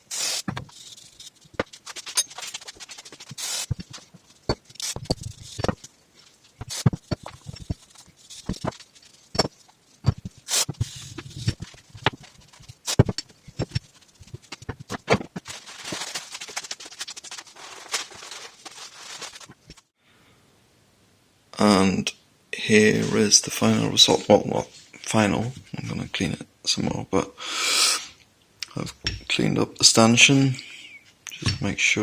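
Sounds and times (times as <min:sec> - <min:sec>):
spray hissing: 0:00.0 - 0:01.3, 0:03.3 - 0:03.9, 0:04.7 - 0:05.6, 0:06.6 - 0:08.6, 0:10.3 - 0:11.2
brush scrubbing metal: 0:00.0 - 0:19.8.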